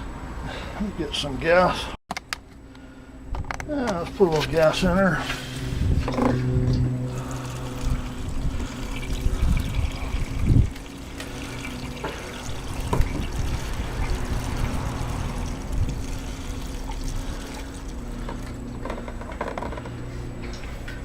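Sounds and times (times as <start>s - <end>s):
liquid pouring into tank: 7.1s - 18.6s.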